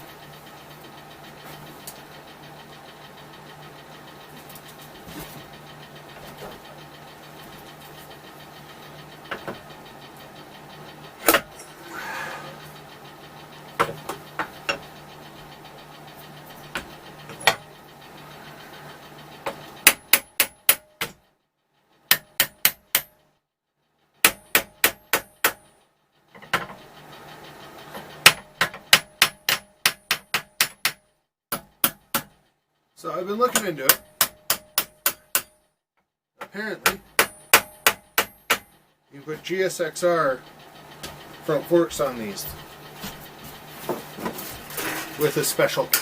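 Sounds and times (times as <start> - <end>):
hammer tapping on metal: 19.5 - 21.2, 22.1 - 23.2, 24.2 - 25.7, 28.2 - 32.4, 33.5 - 35.6, 36.4 - 38.8.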